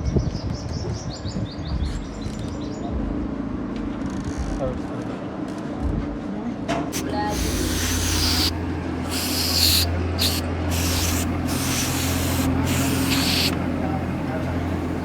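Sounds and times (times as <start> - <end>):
loud hiss bursts: 6.9 - 14.0
car engine humming: 9.8 - 15.0.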